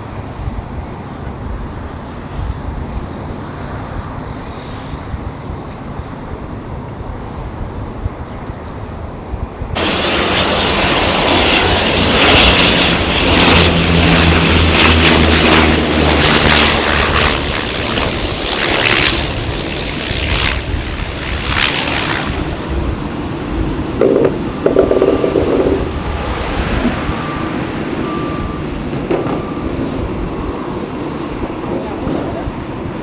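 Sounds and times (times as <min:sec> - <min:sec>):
airliner engines roaring: 0:00.0 - 0:33.0
wind noise: 0:00.0 - 0:33.0.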